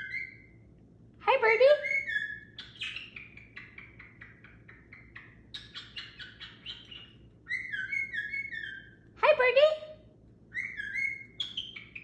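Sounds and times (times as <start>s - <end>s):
bird chirping: 0.0s - 0.7s, 1.3s - 9.2s, 10.4s - 12.0s
bird whistled call: 1.8s - 3.4s, 5.6s - 9.0s, 10.5s - 12.0s.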